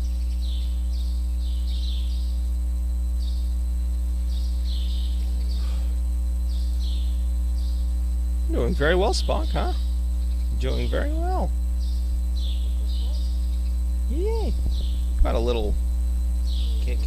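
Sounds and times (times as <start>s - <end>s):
electrical mains hum: 0.0s - 17.0s
faint high chirps: 6.4s - 15.7s.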